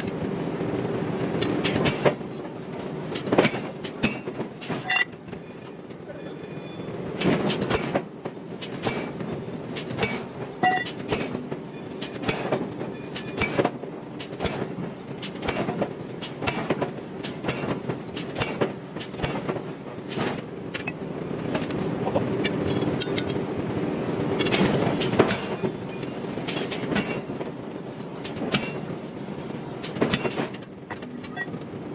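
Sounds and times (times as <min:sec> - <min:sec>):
metalworking machinery humming: 0:20.0 - 0:31.9.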